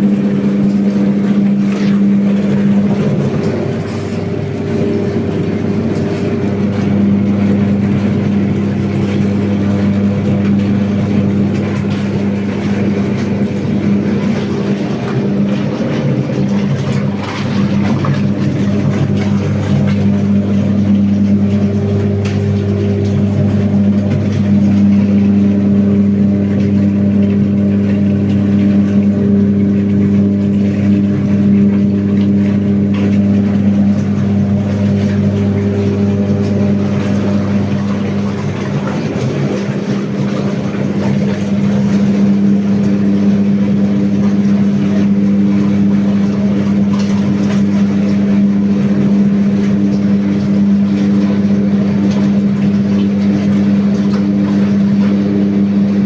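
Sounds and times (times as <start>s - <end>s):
washing machine humming: 0.0s - 56.0s.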